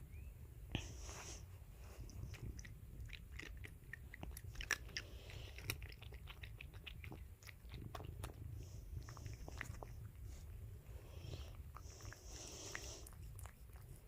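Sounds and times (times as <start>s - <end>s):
low room hum: 0.0s - 14.0s
cat crunching dry treats: 2.2s - 10.2s.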